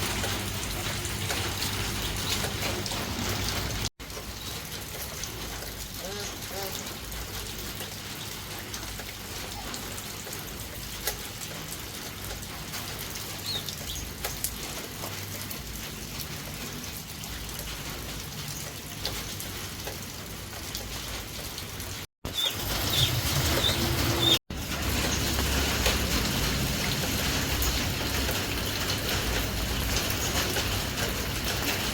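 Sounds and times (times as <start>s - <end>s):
steady outdoor noise: 0.0s - 31.9s
high bird chirps: 13.4s - 14.1s, 22.3s - 24.4s.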